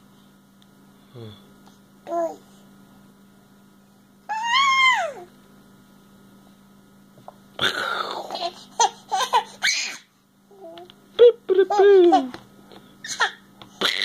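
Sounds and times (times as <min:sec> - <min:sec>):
baby squealing: 0:04.3 - 0:05.2, 0:09.1 - 0:10.1, 0:13.0 - 0:14.0
baby laughing and giggling: 0:08.2 - 0:10.0, 0:13.0 - 0:14.0.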